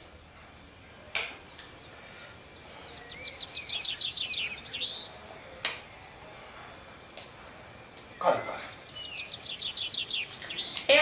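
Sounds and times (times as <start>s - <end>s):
bird chirping and chattering: 1.4s - 5.2s, 8.1s - 11.0s.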